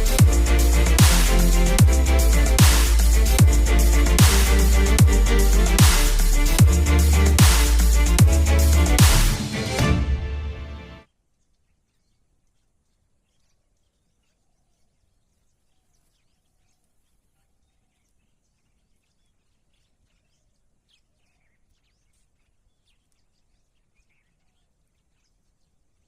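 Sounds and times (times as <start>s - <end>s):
faint bird chirps: 11.2s - 26.0s.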